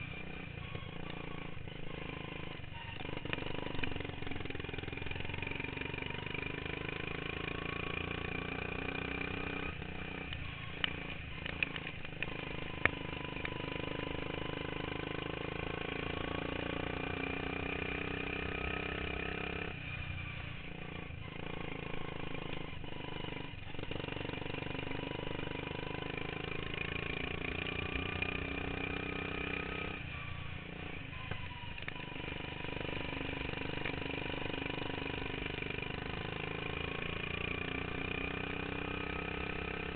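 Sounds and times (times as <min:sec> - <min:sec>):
lawn mower engine running hard: 0:10.9 - 0:39.9.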